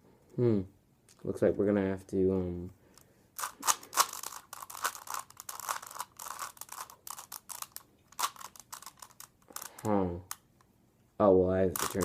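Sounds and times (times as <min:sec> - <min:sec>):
puzzle cube plastic clicking: 0:03.4 - 0:10.4, 0:11.7 - 0:12.0.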